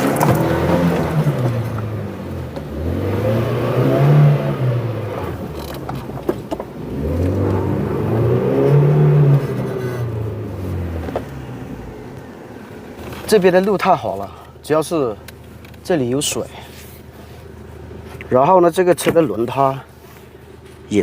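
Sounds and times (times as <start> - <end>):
suv engine revving under load: 0.0 - 13.2.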